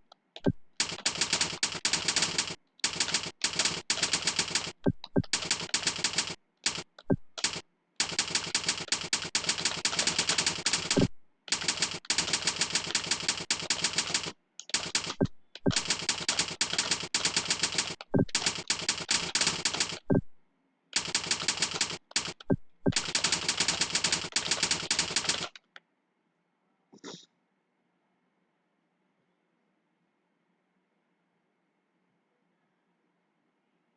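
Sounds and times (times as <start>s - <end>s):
fast keyboard typing: 0.0s - 20.3s, 21.0s - 25.7s.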